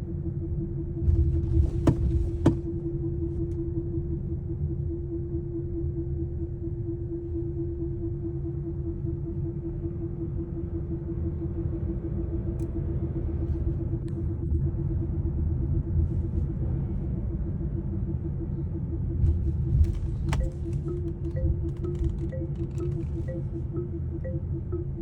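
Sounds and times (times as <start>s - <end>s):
pulsing vehicle driveline hum: 0.0s - 25.0s
road rumble: 0.9s - 3.4s, 11.2s - 25.0s.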